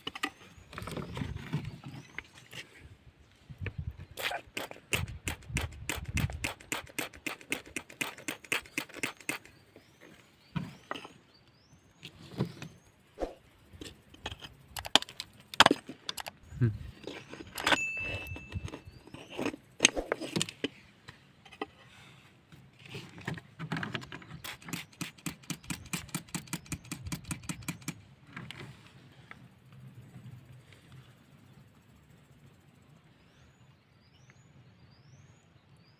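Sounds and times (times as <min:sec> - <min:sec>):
stones clicking and scraping: 0:13.2 - 0:20.8.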